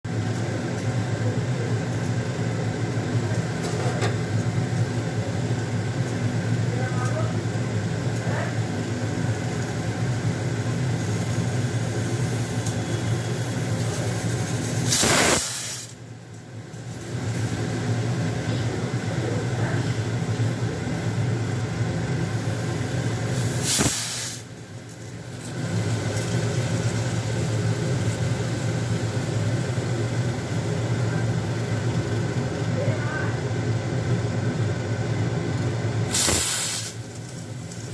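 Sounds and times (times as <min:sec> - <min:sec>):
low machine hum: 0:00.1 - 0:14.9, 0:15.9 - 0:23.8, 0:24.4 - 0:37.9
pressure cooker steam hissing: 0:07.4 - 0:16.0, 0:22.1 - 0:24.6, 0:36.0 - 0:37.9
faint hiss: 0:12.1 - 0:16.0, 0:23.3 - 0:24.5, 0:36.1 - 0:37.1
sharp click: 0:36.1 - 0:36.9.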